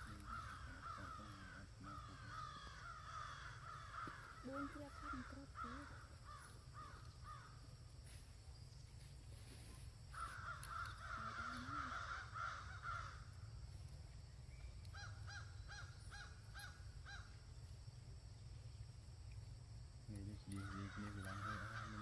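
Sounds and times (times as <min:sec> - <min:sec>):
harsh animal calls: 0:00.0 - 0:07.6, 0:10.2 - 0:13.3, 0:20.4 - 0:22.0.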